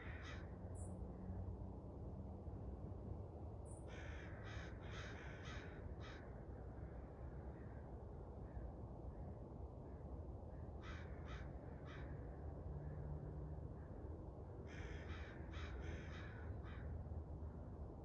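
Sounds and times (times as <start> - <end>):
bird cawing: 0.0 - 0.5, 3.9 - 6.2, 10.8 - 12.1, 14.7 - 16.9.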